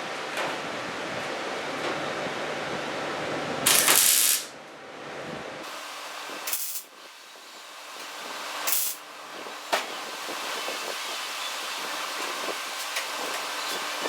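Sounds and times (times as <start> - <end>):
welding hiss: 3.7 - 4.5, 5.6 - 14.0.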